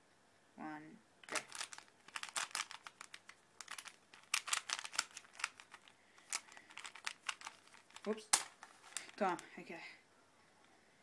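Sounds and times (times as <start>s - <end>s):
puzzle cube twisting and clicking: 1.2s - 9.4s.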